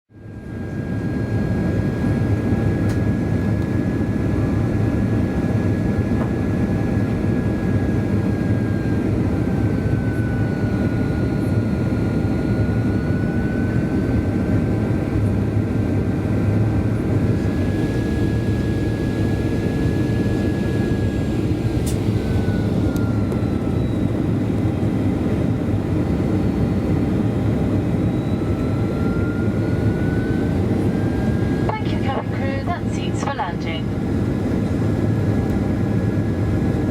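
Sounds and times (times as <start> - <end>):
engine and airflow rush: 1.9 - 36.9
thin engine whine: 5.7 - 33.2.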